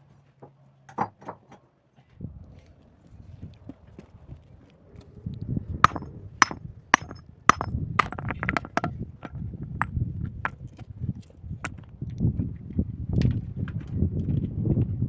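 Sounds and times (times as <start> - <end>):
sharp knocks: 5.9 - 9.4.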